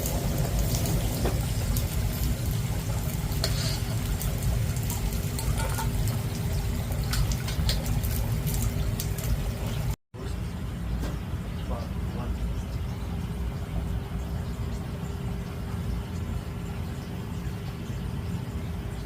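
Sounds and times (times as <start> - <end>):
sharp crackles in hot oil: 0.0 - 10.0
deep-frying sizzle: 0.0 - 19.0.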